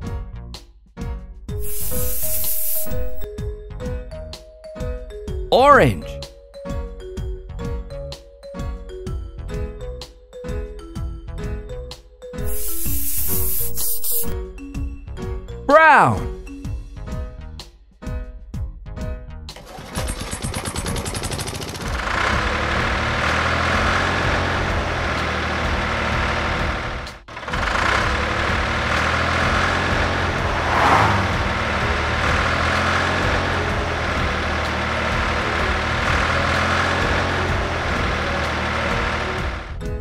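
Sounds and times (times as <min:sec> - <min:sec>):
construction machine engine running: 0:01.6 - 0:03.3, 0:12.4 - 0:14.3, 0:19.6 - 0:39.8.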